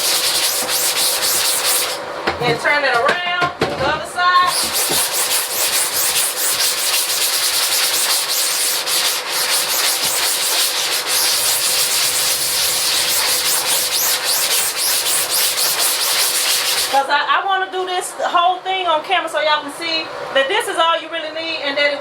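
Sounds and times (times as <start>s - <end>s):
scrubbing strokes on mesh screen: 0.0s - 2.0s, 4.5s - 17.0s.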